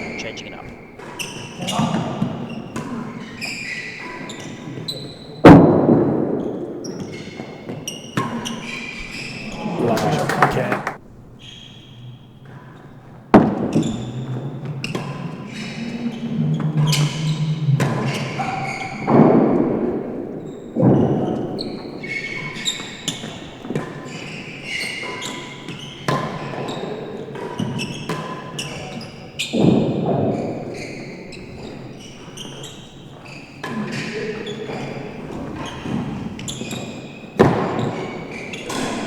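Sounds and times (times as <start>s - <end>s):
ball striking walls and floor: 9.6s - 11.0s
racquets hitting ball: 9.6s - 11.0s.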